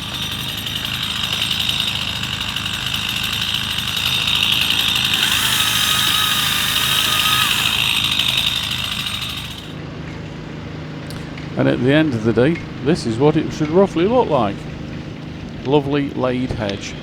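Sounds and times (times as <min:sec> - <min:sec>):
chainsaw running with high whine: 0:00.0 - 0:09.8.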